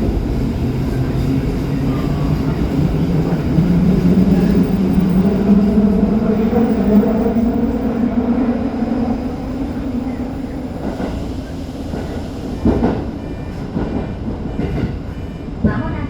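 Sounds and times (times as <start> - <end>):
train motors humming: 0.0 - 15.2.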